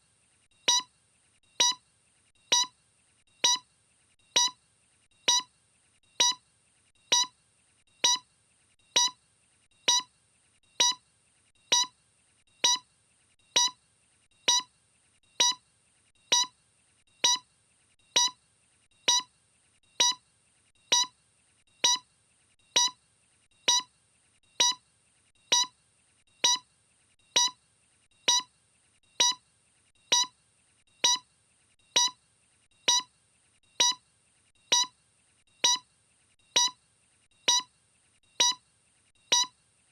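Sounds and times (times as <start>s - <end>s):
short electronic beeps: 0.7s - 0.9s, 1.6s - 1.8s, 2.5s - 2.7s, 3.4s - 3.6s, 4.4s - 4.6s, 5.3s - 5.5s, 6.2s - 6.4s, 7.1s - 7.3s, 8.0s - 8.2s, 9.0s - 9.2s, 9.9s - 10.1s, 10.8s - 11.0s, 11.7s - 11.9s, 12.6s - 12.8s, 13.6s - 13.8s, 14.5s - 14.7s, 15.4s - 15.6s, 16.3s - 16.5s, 17.2s - 17.4s, 18.2s - 18.4s, 19.1s - 19.3s, 20.0s - 20.2s, 20.9s - 21.1s, 21.8s - 22.0s, 22.8s - 23.0s, 23.7s - 23.9s, 24.6s - 24.8s, 25.5s - 25.7s, 26.4s - 26.6s, 27.4s - 27.6s, 28.3s - 28.5s, 29.2s - 29.4s, 30.1s - 30.3s, 31.0s - 31.2s, 32.0s - 32.2s, 32.9s - 33.1s, 33.8s - 34.0s, 34.7s - 34.9s, 35.6s - 35.8s, 36.6s - 36.8s, 37.5s - 37.7s, 38.4s - 38.6s, 39.3s - 39.5s.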